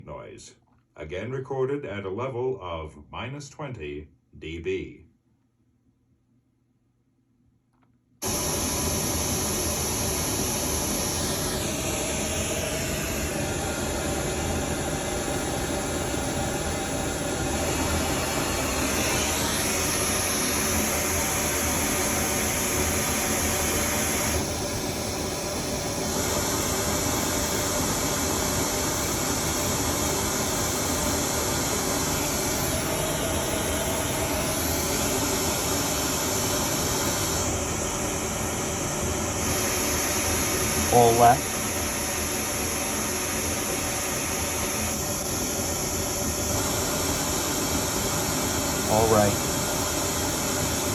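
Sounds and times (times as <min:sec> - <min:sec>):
pink noise hiss: 0:48.8 - 0:49.6.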